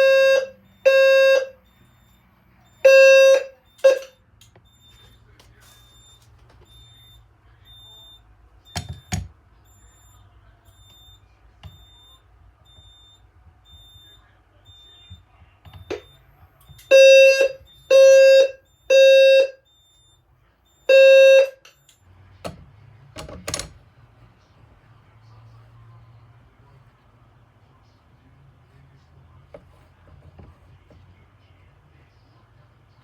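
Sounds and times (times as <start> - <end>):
low fire alarm blasts: 0.0 - 5.2, 15.8 - 22.0
faint high beeping: 0.0 - 22.2.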